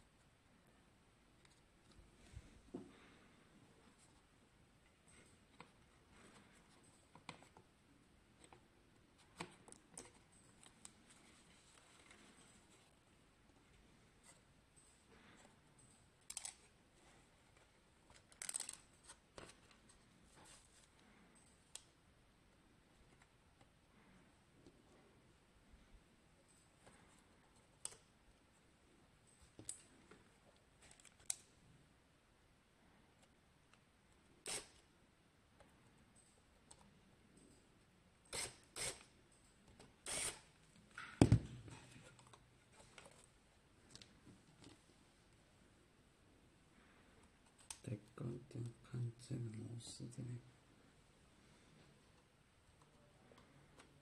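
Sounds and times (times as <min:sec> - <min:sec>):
small parts clicking and rattling: 0:14.7 - 0:16.7, 0:18.1 - 0:18.9
clicks and scrapes of handling parts: 0:40.9 - 0:44.9.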